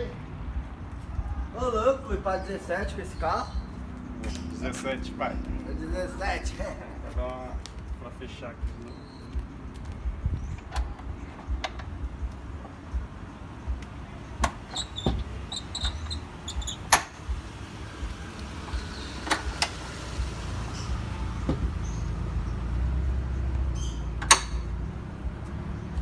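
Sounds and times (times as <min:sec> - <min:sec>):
steady low rumble: 0:00.0 - 0:26.0
car doors being shut: 0:14.4 - 0:17.4, 0:21.3 - 0:22.0.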